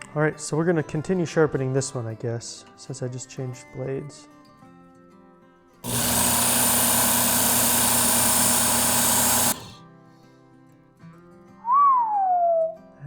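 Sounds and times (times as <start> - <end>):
belt sharpener grinding knife: 5.9 - 9.8.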